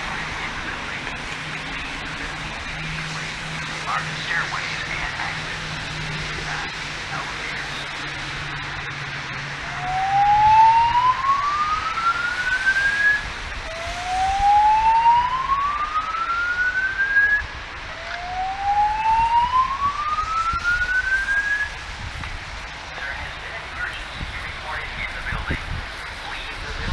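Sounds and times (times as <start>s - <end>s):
fire alarm whoop tone: 9.6s - 21.8s.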